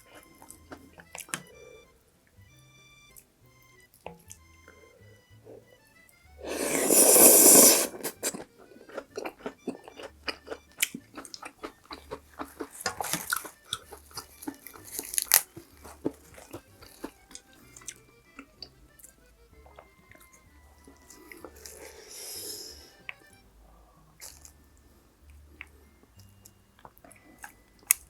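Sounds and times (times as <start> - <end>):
chewing with wet crunches: 0.0 - 1.8, 7.9 - 28.0.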